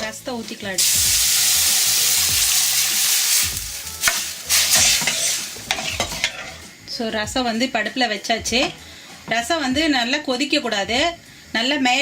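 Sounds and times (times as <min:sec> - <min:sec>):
hot oil sizzling: 0:00.0 - 0:06.6
pot being stirred: 0:00.4 - 0:06.6.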